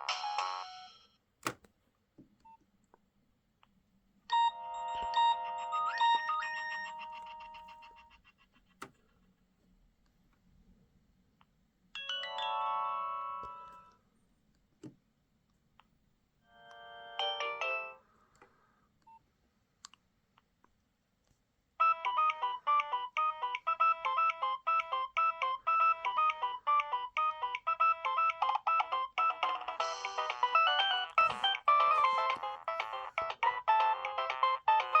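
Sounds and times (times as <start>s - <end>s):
polyphonic phone ringtone: 0.0s - 1.1s, 4.3s - 7.6s, 12.0s - 13.9s, 21.8s - 35.0s.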